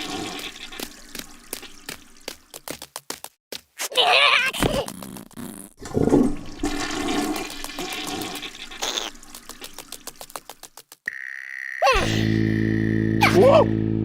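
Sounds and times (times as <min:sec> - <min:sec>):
rushing swirling water: 0:00.0 - 0:02.6, 0:05.8 - 0:10.7.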